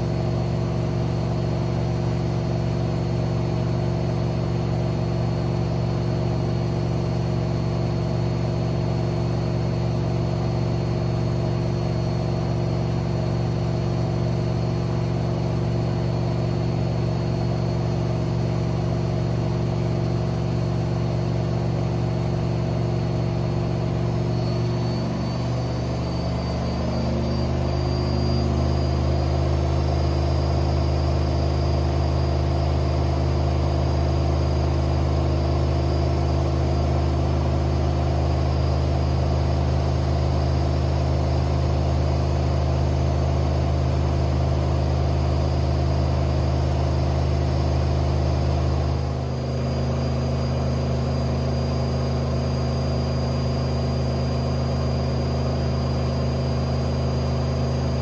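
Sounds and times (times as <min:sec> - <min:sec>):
washing machine running: 0:00.0 - 0:58.0.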